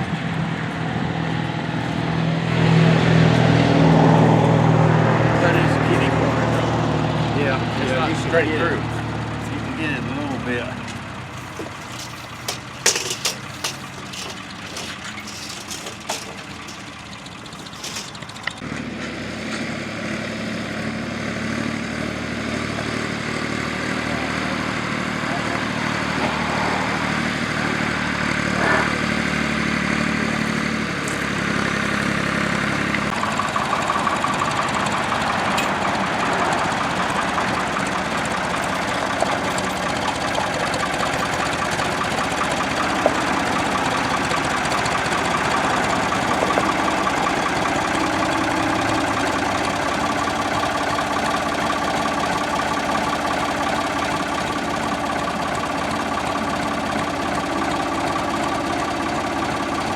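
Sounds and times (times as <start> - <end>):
engine running: 0.0 - 59.9.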